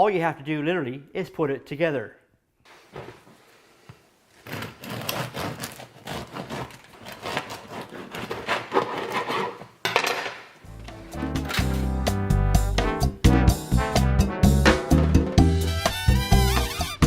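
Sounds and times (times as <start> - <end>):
jazz music with brass: 10.7 - 17.0.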